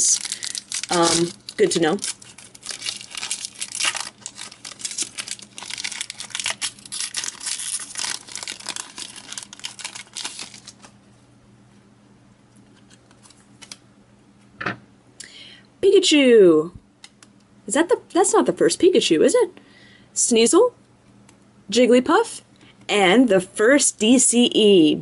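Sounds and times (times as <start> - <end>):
foil wrapper crinkling and tearing: 0.0 - 11.0, 12.7 - 13.8.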